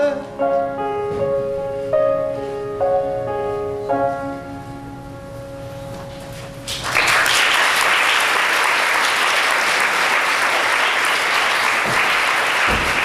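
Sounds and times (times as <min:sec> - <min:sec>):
audience applause: 0:06.7 - 0:13.0.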